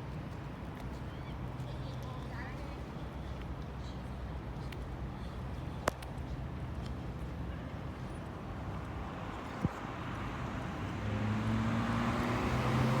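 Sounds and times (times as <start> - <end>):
vehicle approaching: 9.0 - 13.0.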